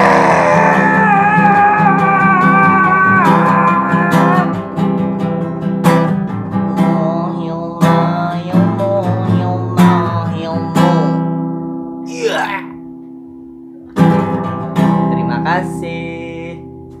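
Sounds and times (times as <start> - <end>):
acoustic guitar strumming: 0.0 - 17.0.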